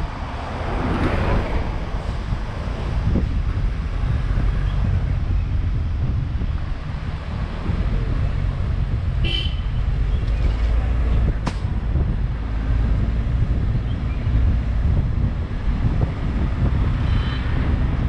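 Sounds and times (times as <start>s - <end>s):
low rumble of moving vehicle: 0.0s - 18.0s
vehicle horn toot: 9.2s - 9.8s, 17.0s - 17.6s.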